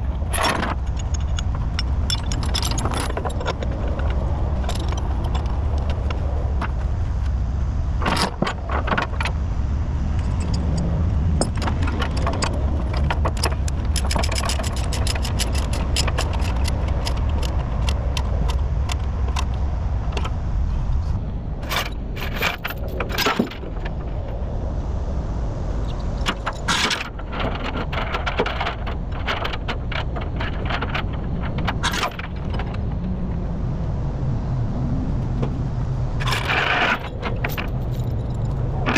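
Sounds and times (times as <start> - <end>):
metal chains rattling and clanking: 0.0 - 6.1, 10.2 - 19.0, 21.6 - 23.8, 26.1 - 32.8, 36.2 - 38.9.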